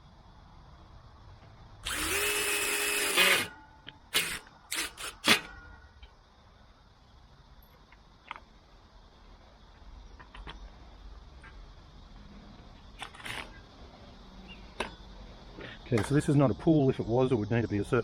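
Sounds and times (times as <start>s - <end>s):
power drill driving screw: 1.8s - 5.5s.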